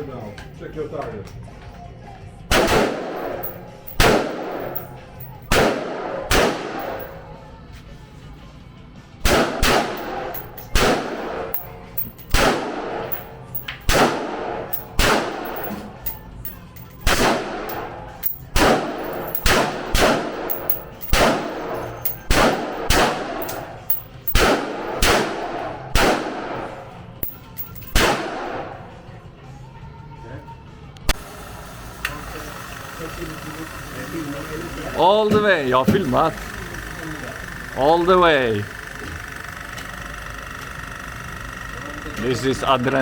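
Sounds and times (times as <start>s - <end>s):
gunshots with ringing echo: 2.5s - 4.8s, 5.5s - 7.2s, 9.3s - 11.5s, 12.3s - 13.2s, 13.8s - 15.8s, 17.0s - 17.9s, 18.5s - 26.8s.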